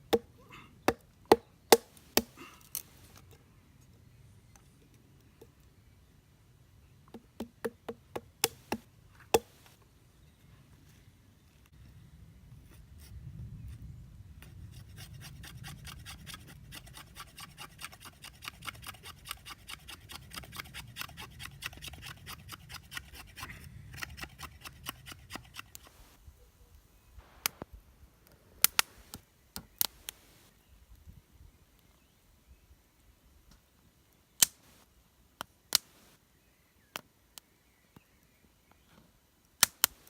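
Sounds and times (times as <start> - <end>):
hand tool rasping wood: 15.0 - 26.1
sharp cracks: 34.4 - 34.8.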